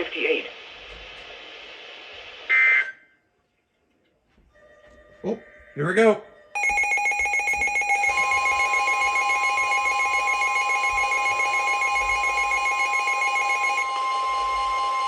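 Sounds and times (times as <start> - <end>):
fast warbling electronic tone: 6.6 - 15.0
steady alarm tone: 6.6 - 15.0.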